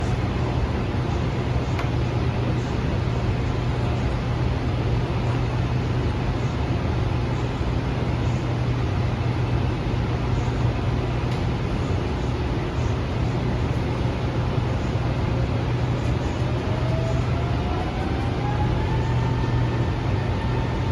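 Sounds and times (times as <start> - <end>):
train interior hum and rumble: 0.0 - 20.9.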